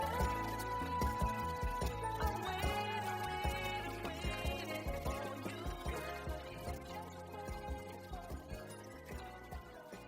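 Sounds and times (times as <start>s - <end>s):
pop music with bass and kick drum: 0.0s - 10.0s.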